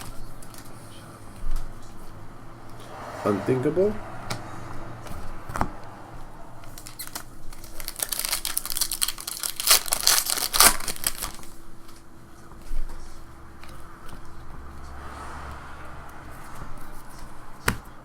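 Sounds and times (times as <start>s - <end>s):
foil wrapper tearing and rustling: 6.8s - 11.7s.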